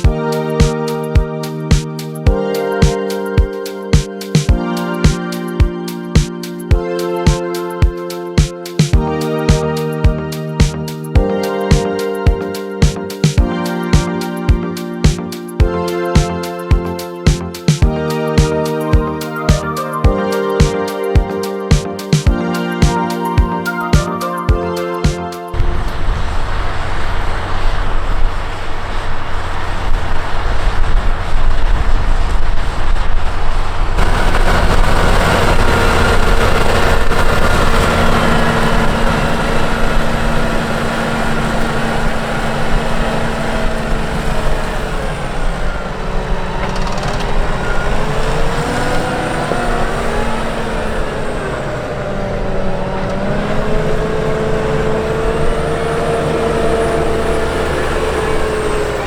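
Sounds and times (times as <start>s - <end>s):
tractor diesel engine running: 33.6s - 59.0s.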